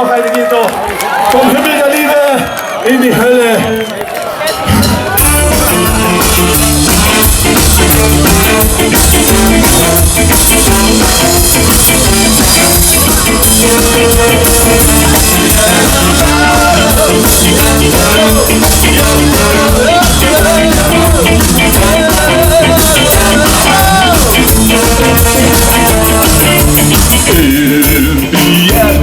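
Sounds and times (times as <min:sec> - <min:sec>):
ska band playing live: 0:04.4 - 0:29.0
drum kit and bass beat: 0:04.6 - 0:29.0.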